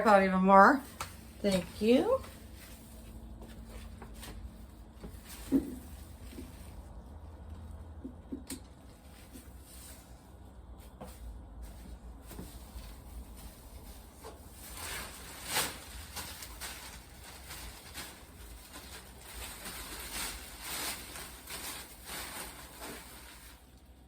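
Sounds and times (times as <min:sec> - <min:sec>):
rustling and scraping handling: 0:00.0 - 0:24.0.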